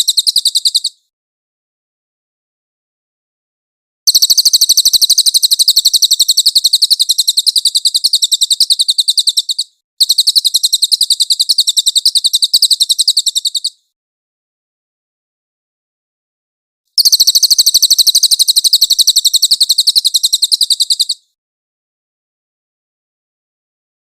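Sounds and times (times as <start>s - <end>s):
bird singing rapid trill: 0.0s - 1.1s, 4.1s - 13.9s, 17.0s - 21.4s.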